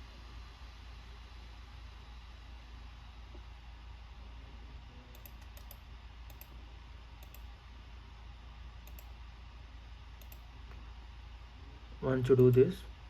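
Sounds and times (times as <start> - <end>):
low steady hum: 0.0 - 13.0
faint clicks: 5.1 - 6.5, 7.2 - 7.5, 8.8 - 9.1, 10.2 - 10.8.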